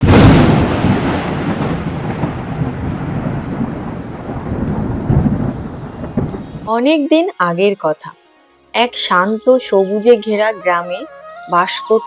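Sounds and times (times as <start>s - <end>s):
thunder crack and rolling rumble: 0.0s - 6.7s.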